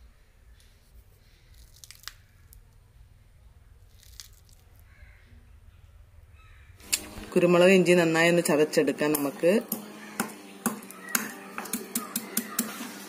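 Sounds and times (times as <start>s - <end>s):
herb sprigs crinkling: 0.6s - 2.9s, 3.7s - 5.2s.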